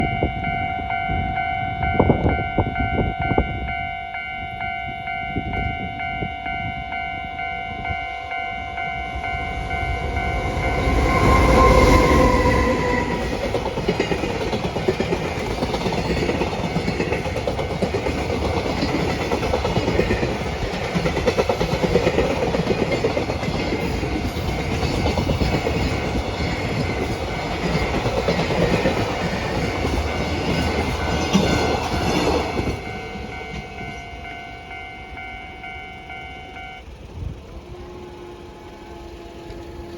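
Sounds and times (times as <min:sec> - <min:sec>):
level crossing bell ringing: 0:00.0 - 0:13.0, 0:29.7 - 0:36.9
locomotive horn: 0:07.2 - 0:13.4, 0:35.9 - 0:39.9.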